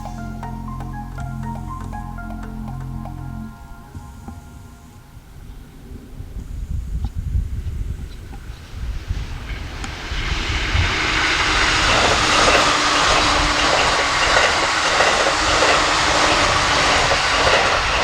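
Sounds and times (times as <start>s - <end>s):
electric train passing: 9.0s - 18.0s
train wheel clatter: 11.5s - 18.0s.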